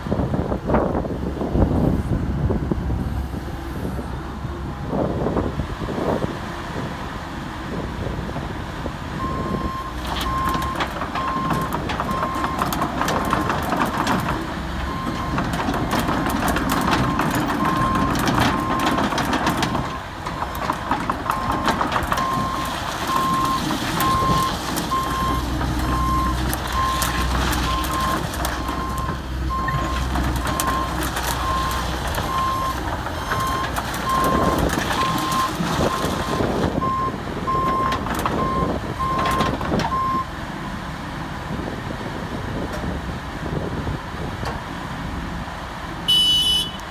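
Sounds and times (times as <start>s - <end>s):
diesel engine running: 0.0s - 46.9s
machine clanks and knocks: 10.0s - 36.8s, 37.6s - 40.0s
travel alarm beeping: 46.1s - 46.8s.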